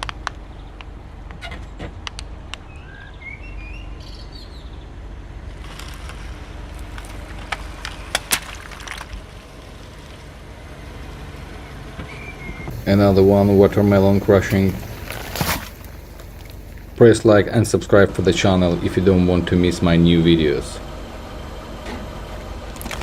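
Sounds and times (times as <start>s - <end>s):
sharp pops and cracks: 0.0s - 1.4s, 5.6s - 10.4s, 14.5s - 17.0s, 22.7s - 23.0s
car engine rumbling: 0.0s - 23.0s
birds chirping: 2.6s - 22.8s
car tyre rolling over balloon: 5.1s - 19.1s, 21.8s - 23.0s.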